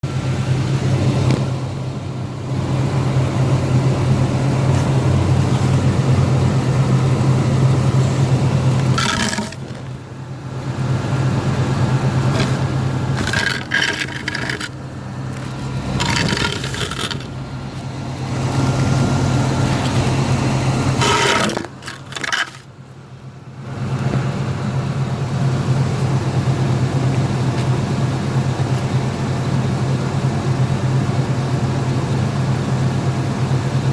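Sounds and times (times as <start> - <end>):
car engine low drone: 0.0 - 33.9
engine popping bursts: 2.4 - 22.6.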